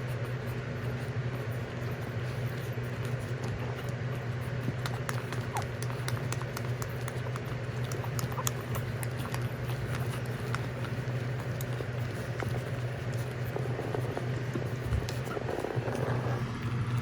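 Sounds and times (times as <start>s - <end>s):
puppy claws clicking: 1.8s - 17.0s
puppy squeaks: 4.5s - 12.2s.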